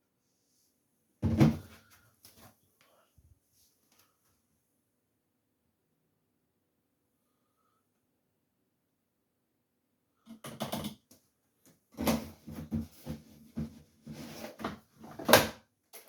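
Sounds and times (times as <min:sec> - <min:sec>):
clunks and rattles of handled things: 0:01.2 - 0:02.5, 0:10.3 - 0:16.0.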